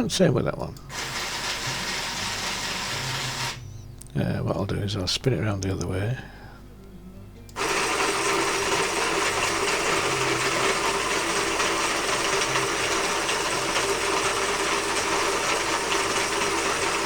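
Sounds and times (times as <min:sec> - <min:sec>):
electric motor and gearing running: 0:00.9 - 0:03.7, 0:07.6 - 0:17.0.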